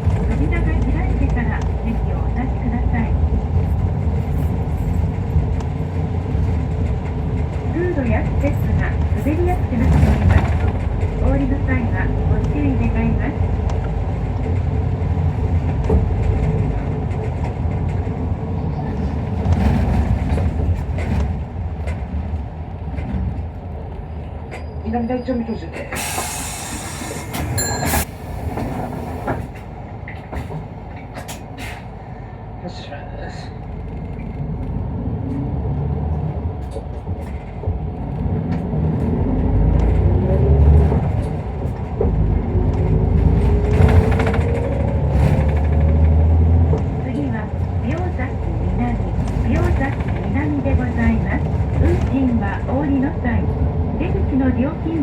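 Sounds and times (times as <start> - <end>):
rattling clicks in cabin: 0.0 - 2.2, 4.2 - 18.4, 19.3 - 23.6, 28.5 - 31.9, 36.6 - 39.2, 40.8 - 53.1
bus engine and road rumble: 0.0 - 55.0.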